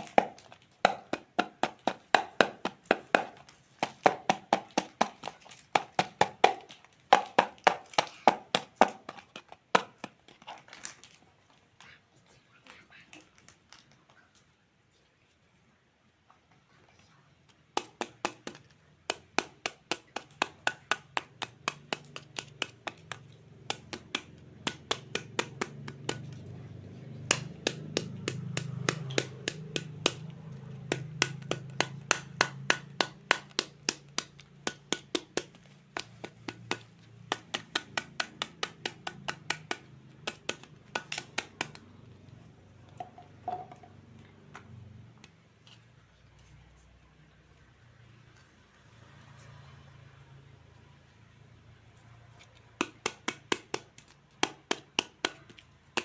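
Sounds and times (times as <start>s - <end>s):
toy knife chopping on cutting board: 17.8s - 41.9s.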